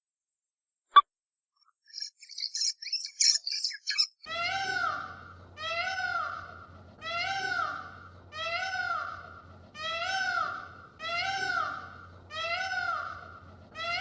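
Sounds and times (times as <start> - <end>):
animal crying high-pitched: 4.2 - 14.0.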